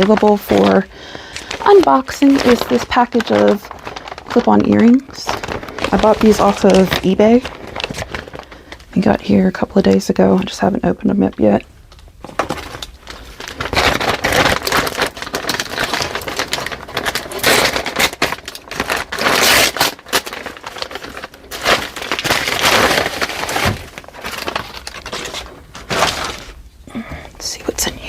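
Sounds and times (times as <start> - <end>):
package being torn open: 11.9 - 26.7.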